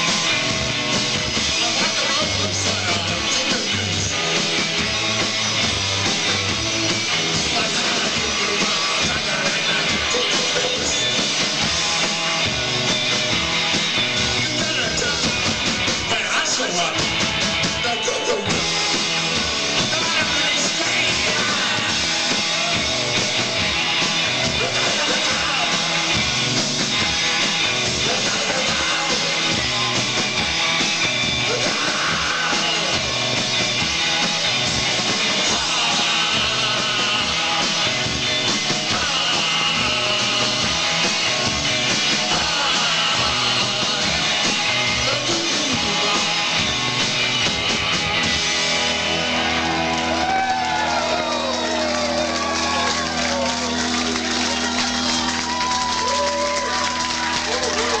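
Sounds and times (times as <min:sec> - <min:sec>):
live rock band playing: 0:00.0 - 0:58.0
person singing: 0:01.4 - 0:04.3, 0:07.3 - 0:11.2, 0:19.8 - 0:23.0, 0:24.4 - 0:26.1, 0:27.9 - 0:29.6, 0:31.3 - 0:33.2, 0:35.2 - 0:41.3, 0:41.9 - 0:46.8.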